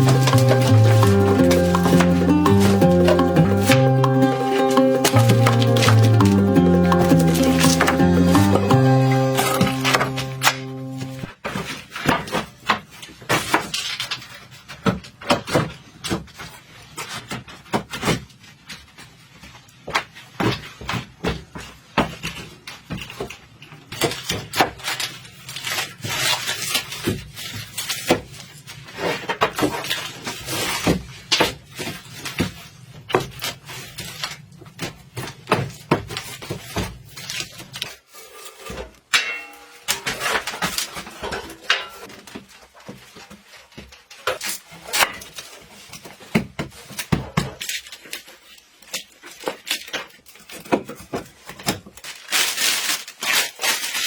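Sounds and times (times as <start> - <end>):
objects knocking and clattering: 0.0 - 10.4.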